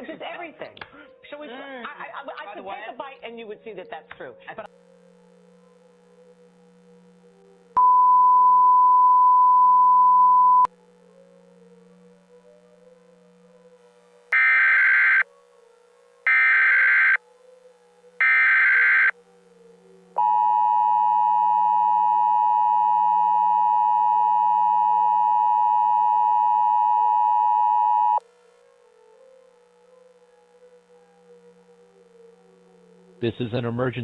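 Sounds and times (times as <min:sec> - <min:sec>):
screeching digital header bursts: 0:14.4 - 0:15.2, 0:16.3 - 0:17.2, 0:18.2 - 0:19.1.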